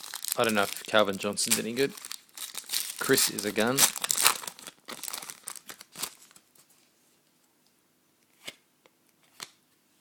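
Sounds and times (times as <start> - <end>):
paper and foil crinkling: 0.0 - 6.7.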